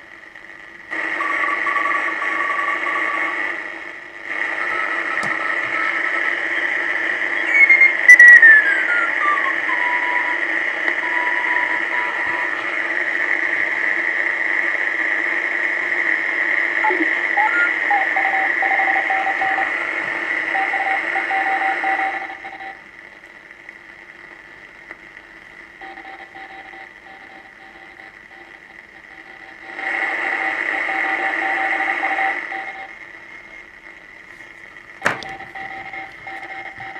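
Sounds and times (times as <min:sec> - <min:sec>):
radio receiver hiss: 0:00.0 - 0:36.9
steady high whistle: 0:04.6 - 0:10.4, 0:16.8 - 0:19.7
whistle sliding down in pitch: 0:07.5 - 0:09.5.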